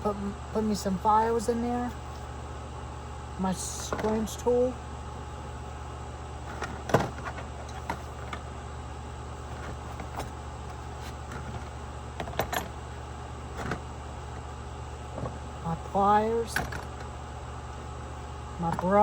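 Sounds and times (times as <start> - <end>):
steady low hum: 0.0 - 19.0
metal tools clunking into toolbox: 12.2 - 12.7.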